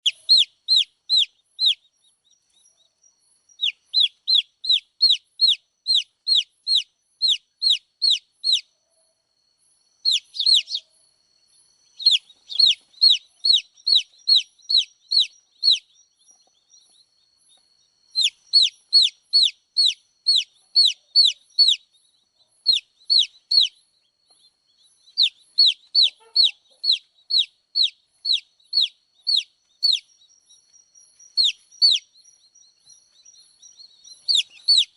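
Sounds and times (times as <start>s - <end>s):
baby chicks peeping: 0.0s - 34.9s.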